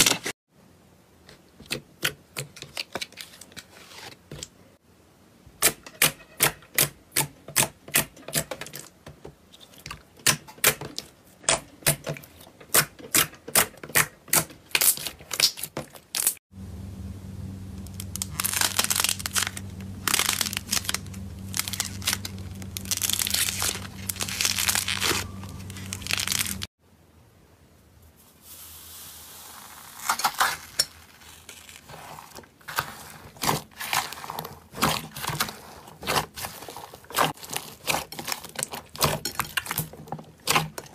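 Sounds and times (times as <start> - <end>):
low hum: 16.5 - 26.7
slime popping and crackling: 17.8 - 26.7.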